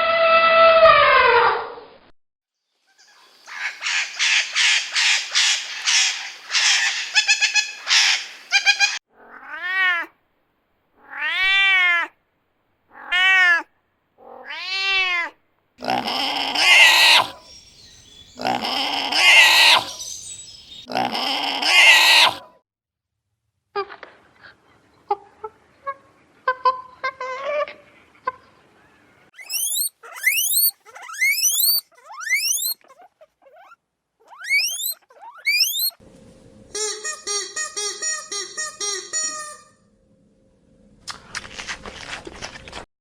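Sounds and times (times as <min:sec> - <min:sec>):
animal calls: 0:15.8 - 0:22.6, 0:29.4 - 0:36.0.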